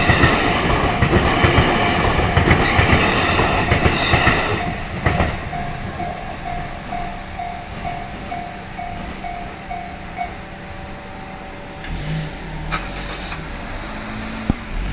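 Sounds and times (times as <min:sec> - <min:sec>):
car engine: 0:00.0 - 0:14.9
level-crossing bell dinging: 0:02.8 - 0:11.8.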